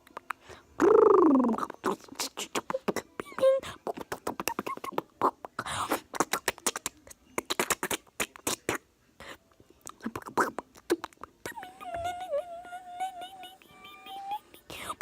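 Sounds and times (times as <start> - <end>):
mouth clicks and pops: 0.0 - 3.0, 3.8 - 8.8, 9.8 - 11.4.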